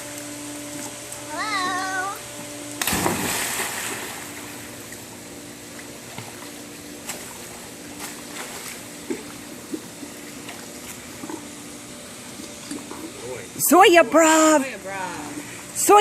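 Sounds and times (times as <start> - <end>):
steady low hum: 0.0 - 16.0
small sharp splashes: 2.8 - 5.0
pool water lapping and splashing: 2.8 - 16.0.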